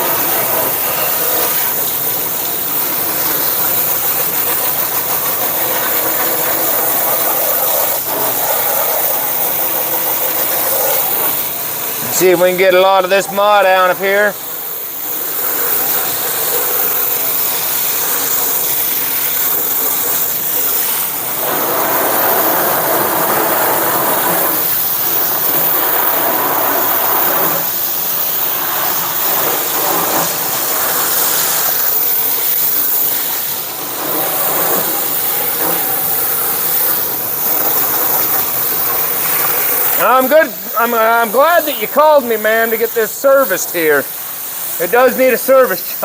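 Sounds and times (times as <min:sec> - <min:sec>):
water spraying on metal: 0:00.0 - 0:46.0.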